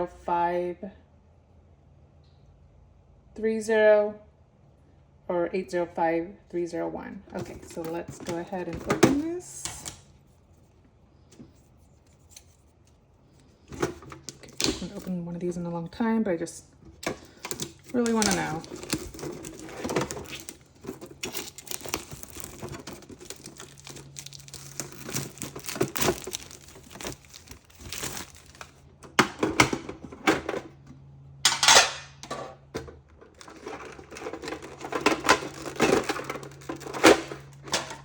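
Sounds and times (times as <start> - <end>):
plastic wrapping crinkling and tearing: 17.0 - 28.8, 33.3 - 38.0.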